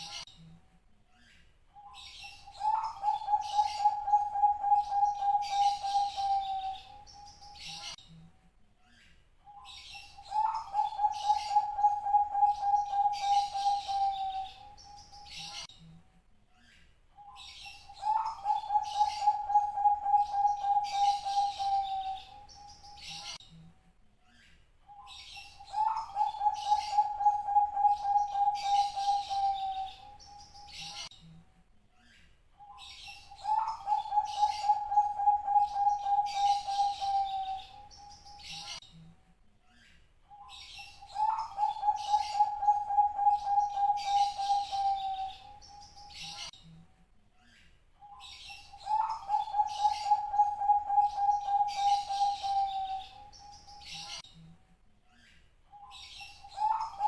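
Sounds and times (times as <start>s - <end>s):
dove cooing: 2.2s - 7.8s, 10.0s - 15.5s, 17.9s - 23.2s, 25.4s - 30.9s, 33.1s - 38.6s, 41.0s - 46.4s, 48.7s - 54.0s, 56.2s - 57.0s
high bird chirps: 39.8s - 46.5s, 47.5s - 54.2s.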